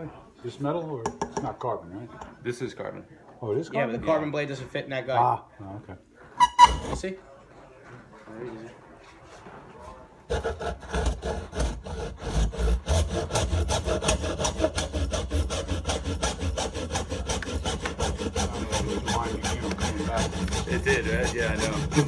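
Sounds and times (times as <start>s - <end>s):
hacksaw cutting through tube: 6.4s - 7.0s, 10.3s - 22.0s.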